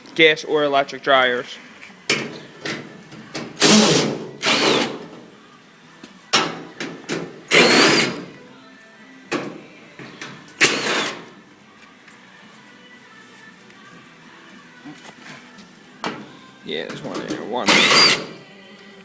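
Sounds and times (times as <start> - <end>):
cordless drill running in spurts: 17.7 - 18.3.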